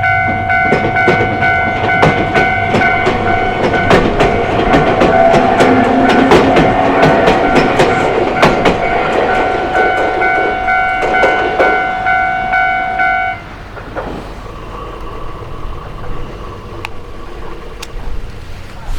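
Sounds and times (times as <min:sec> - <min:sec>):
level crossing ringing tones: 0:00.0 - 0:13.5
train wheels clacking over rail joints: 0:00.0 - 0:18.9.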